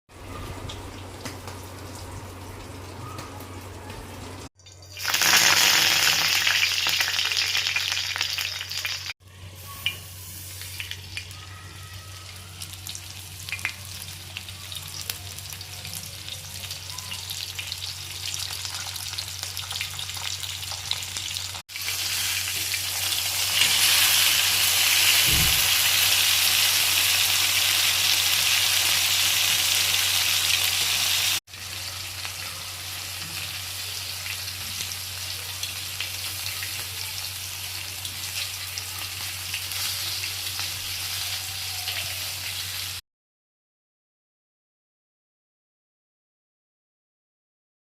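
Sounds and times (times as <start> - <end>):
fish frying in hot oil: 4.6 - 9.1, 12.8 - 43.0.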